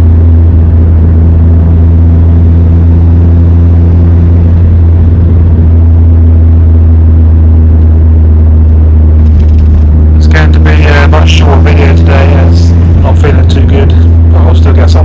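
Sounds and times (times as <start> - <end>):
car driving rumble: 0.0 - 15.0.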